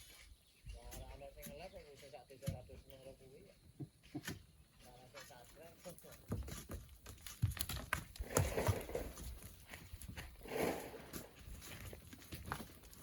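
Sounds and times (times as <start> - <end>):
sand rushing: 8.2 - 9.3, 10.2 - 11.8.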